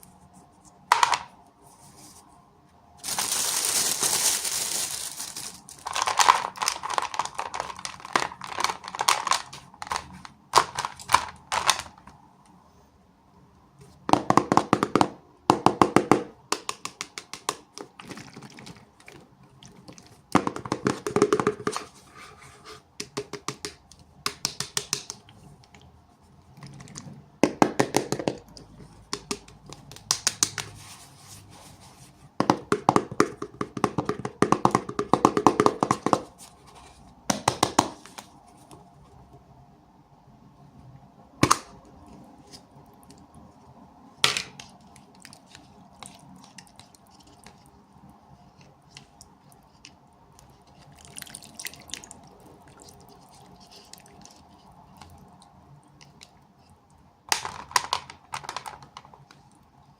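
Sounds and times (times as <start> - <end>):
plastic packaging crinkling: 3.0 - 12.0.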